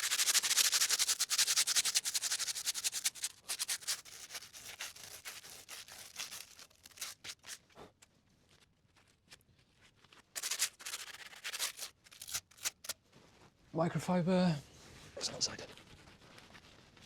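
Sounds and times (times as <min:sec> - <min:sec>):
hand sanding rust off steel: 0:00.0 - 0:07.6, 0:10.4 - 0:13.0.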